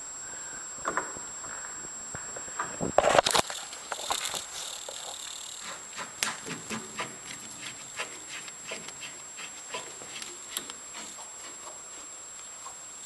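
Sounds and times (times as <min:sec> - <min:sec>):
metal parts clicking and scraping: 0:03.1 - 0:05.7.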